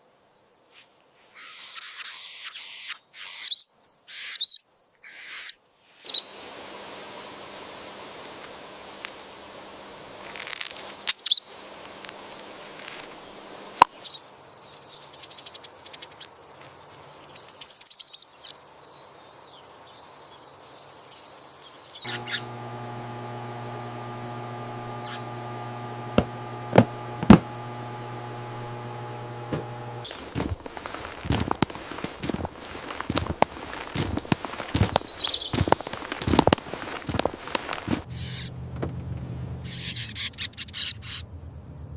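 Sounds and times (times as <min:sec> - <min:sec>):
steady low hum: 0:22.1 - 0:39.8
sharp clicks: 0:24.9 - 0:38.0
small bird chirping: 0:34.4 - 0:36.0.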